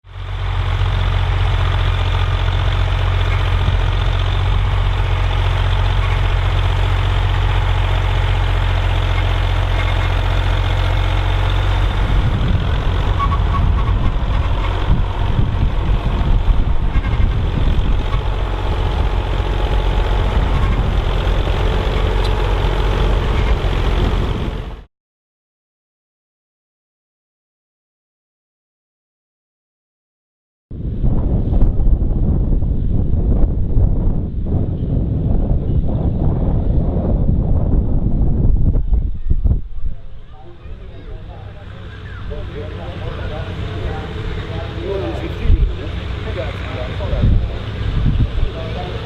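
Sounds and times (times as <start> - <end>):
tractor engine droning: 0.1 - 24.9, 39.9 - 49.0.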